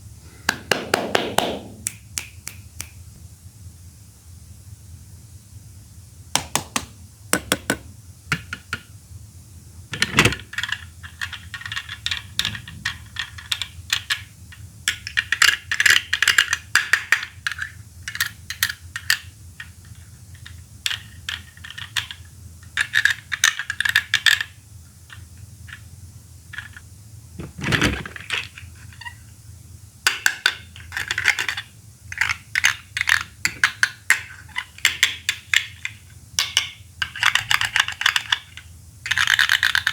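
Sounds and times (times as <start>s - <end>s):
dull knock: 6.4s - 8.5s
plastic toy balls clicking: 10.0s - 22.2s, 22.8s - 24.5s, 30.1s - 39.9s.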